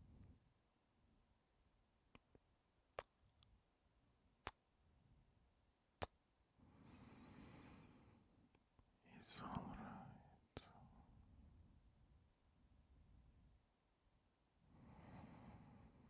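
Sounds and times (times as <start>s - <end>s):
breath: 6.7s - 8.3s, 14.7s - 16.0s.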